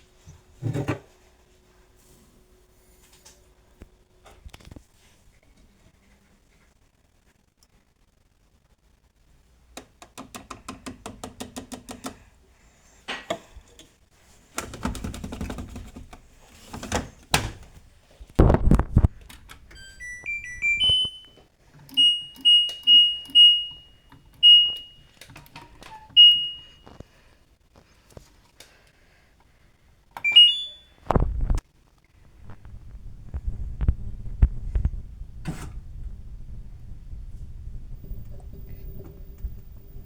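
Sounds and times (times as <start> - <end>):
power-on tune of beeps: 19.8 - 21.3
button press beeps: 19.8 - 25.0, 30.2 - 30.9.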